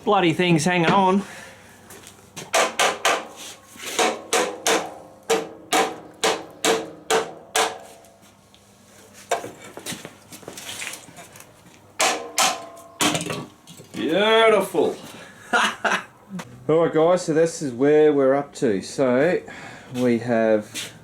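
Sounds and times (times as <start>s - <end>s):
hammer striking metal fender: 2.5s - 8.1s, 12.0s - 13.5s.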